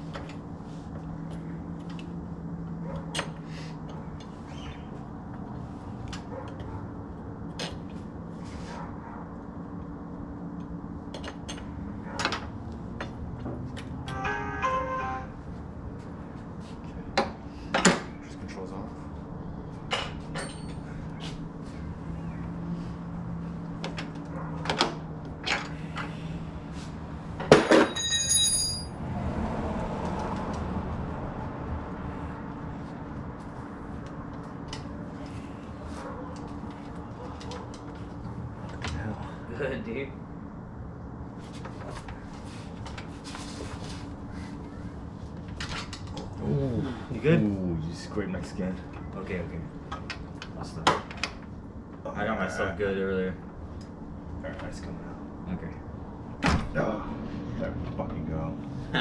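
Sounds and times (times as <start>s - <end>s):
rustling and scraping: 7.7s - 9.0s, 41.3s - 46.2s.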